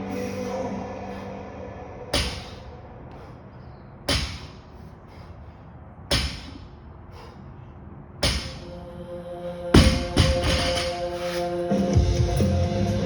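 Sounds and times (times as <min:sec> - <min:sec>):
faint background music: 0:00.0 - 0:03.1, 0:08.2 - 0:13.0
gym equipment thumps: 0:04.1 - 0:04.5, 0:06.1 - 0:06.6, 0:09.8 - 0:10.8.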